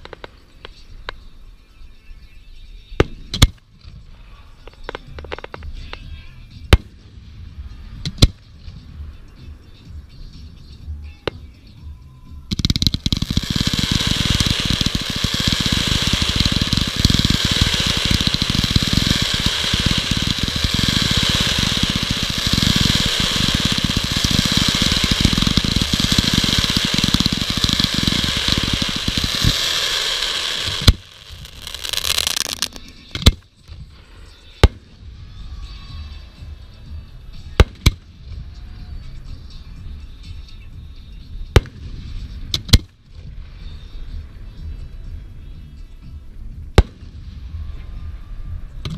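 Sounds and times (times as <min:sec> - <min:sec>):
fireworks barrage: 0:00.0 - 0:01.3, 0:12.5 - 0:35.9
fireworks hissing and whistling: 0:00.0 - 0:41.2
fireworks bangs: 0:12.5 - 0:33.9.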